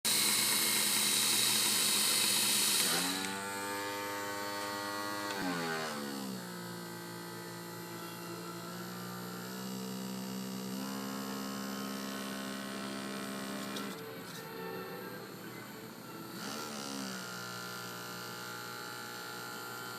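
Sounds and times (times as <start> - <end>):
sewing machine motor humming: 0.0 - 19.9.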